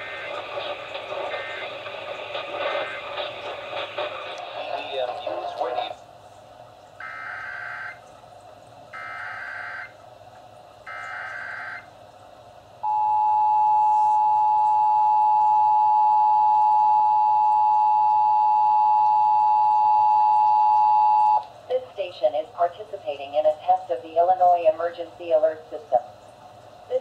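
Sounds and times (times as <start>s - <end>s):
two-tone attention signal: 12.8s - 21.4s.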